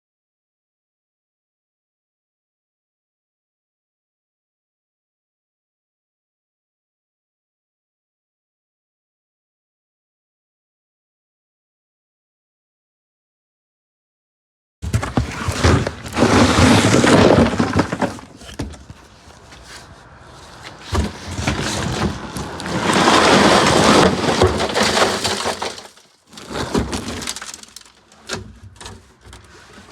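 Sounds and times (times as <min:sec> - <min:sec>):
debris rattling: 0:14.8 - 0:29.9
crashing breakage: 0:14.9 - 0:28.2.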